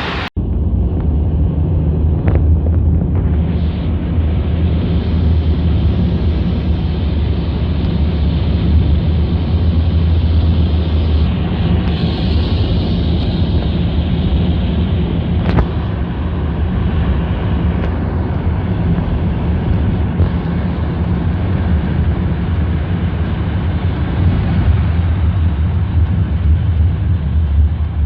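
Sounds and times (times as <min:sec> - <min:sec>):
tyres hissing on wet road: 0:00.0 - 0:00.3, 0:03.3 - 0:24.8
traffic rumble: 0:00.0 - 0:28.0.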